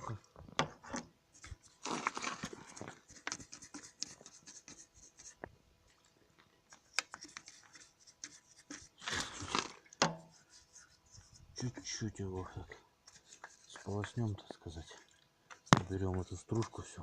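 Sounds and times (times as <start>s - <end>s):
scrubbing strokes: 1.3s - 17.0s.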